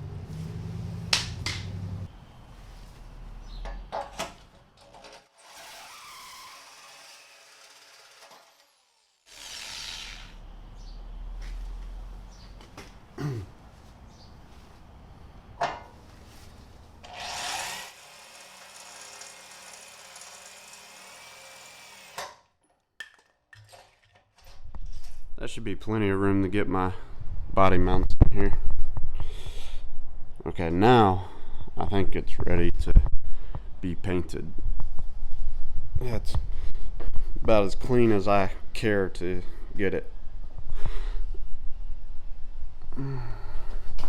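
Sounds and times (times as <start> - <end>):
power drill boring through steel: 5.4 - 10.4, 17.1 - 22.2.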